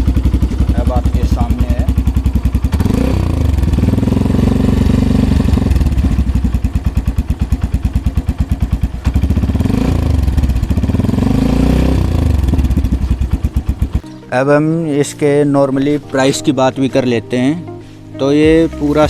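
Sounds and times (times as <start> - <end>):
motorcycle engine revving: 0.0 - 14.0
motorcycle engine idling: 0.0 - 14.1.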